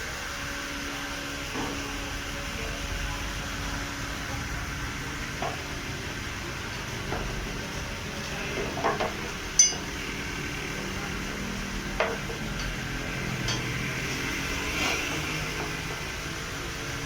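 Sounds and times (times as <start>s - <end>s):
steady low hum: 0.0s - 17.0s
metal tools clinking and knocking: 8.6s - 10.0s, 12.0s - 12.8s, 13.4s - 14.3s.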